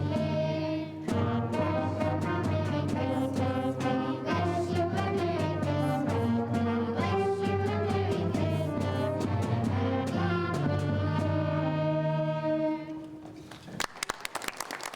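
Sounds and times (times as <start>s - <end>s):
school band with brass: 0.0s - 13.4s
percussion beat: 1.0s - 11.3s.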